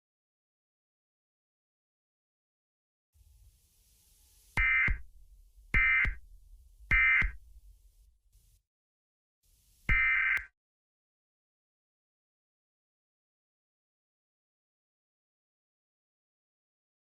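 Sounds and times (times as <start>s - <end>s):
digital data bursts: 4.6s - 5.0s, 9.9s - 10.4s.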